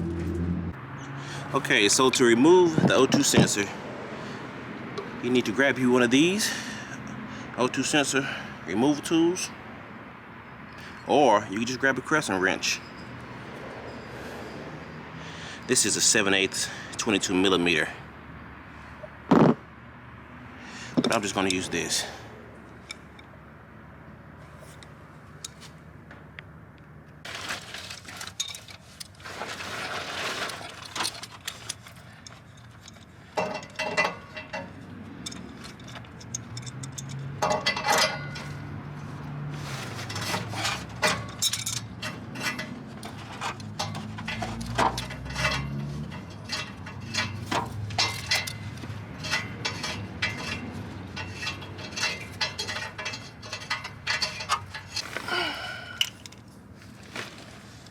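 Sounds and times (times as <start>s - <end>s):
sharp metal clicks and scrapes: 27.2s - 55.3s
wrench clinking on metal: 31.1s - 38.7s, 40.1s - 56.5s.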